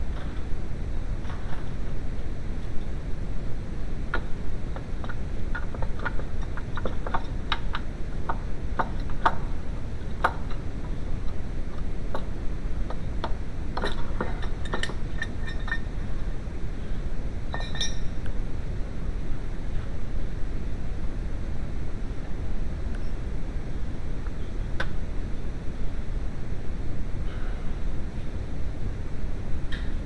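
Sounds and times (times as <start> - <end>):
low background rumble: 0.0 - 30.0
metallic clinks of tools: 17.5 - 18.2.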